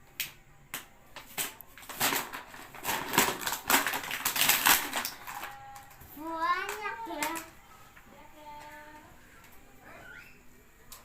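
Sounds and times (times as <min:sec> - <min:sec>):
packaging crinkling and crackling: 0:01.2 - 0:07.6.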